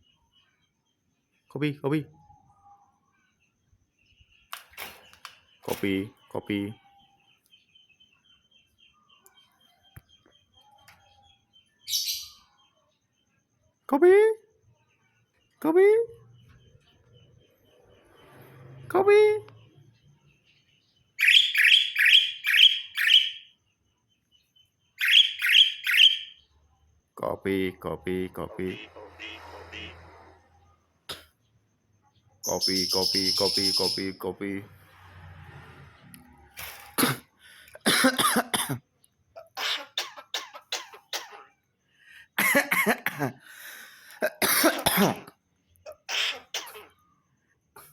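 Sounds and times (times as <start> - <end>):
bird harsh chirping calls: 4.0 - 12.8, 16.2 - 26.6, 27.2 - 30.6, 32.1 - 34.8, 39.4 - 41.6, 45.8 - 47.2
short sharp coughs: 31.1 - 31.4, 36.9 - 38.8, 39.6 - 41.5, 44.2 - 46.9.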